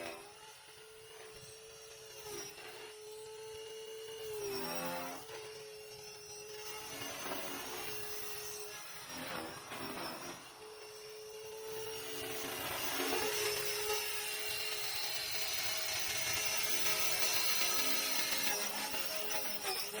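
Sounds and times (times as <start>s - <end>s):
rc helicopter rotor whine: 0.0s - 20.0s.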